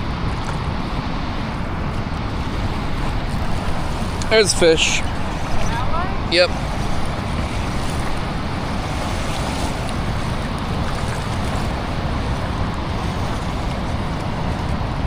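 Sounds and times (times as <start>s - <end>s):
water rushing over spillway: 0.0s - 15.0s.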